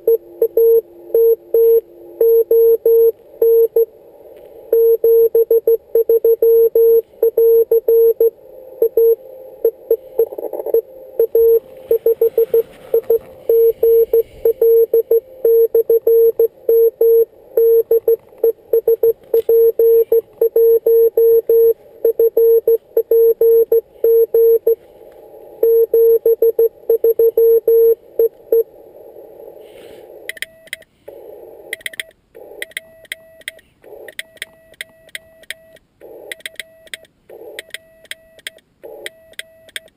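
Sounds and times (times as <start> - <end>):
morse code tone: 0.0 - 3.9, 4.7 - 24.8
higher-pitched morse tone with clicks: 4.8 - 24.8.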